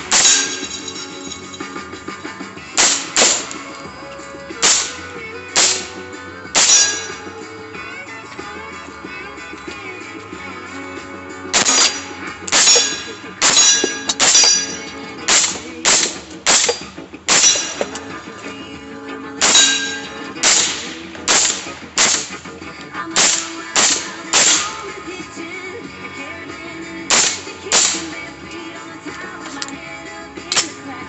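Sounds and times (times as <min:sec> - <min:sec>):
gunshots: 0:00.0 - 0:01.0, 0:02.8 - 0:03.9, 0:04.6 - 0:07.4, 0:11.5 - 0:18.2, 0:19.4 - 0:22.5, 0:23.2 - 0:25.0, 0:27.1 - 0:28.3
high ringing: 0:00.0 - 0:01.9, 0:06.5 - 0:07.6, 0:11.6 - 0:15.3, 0:16.1 - 0:18.2, 0:19.4 - 0:21.0
background music: 0:00.0 - 0:31.0.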